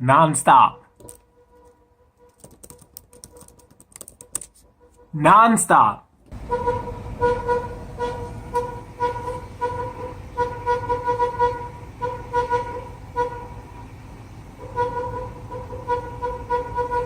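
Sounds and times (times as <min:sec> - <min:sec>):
vehicle horn honking: 0:06.4 - 0:13.6, 0:14.6 - 0:17.0.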